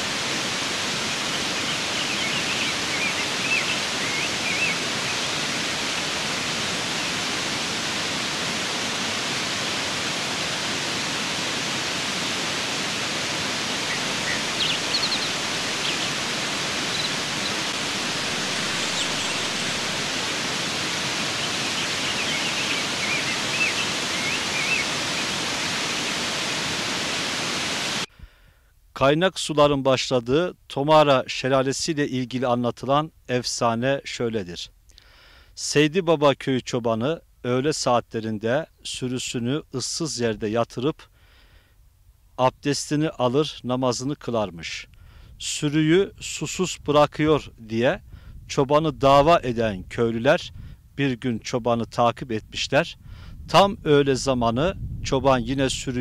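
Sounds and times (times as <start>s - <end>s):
waterfall rushing: 0.0s - 28.1s.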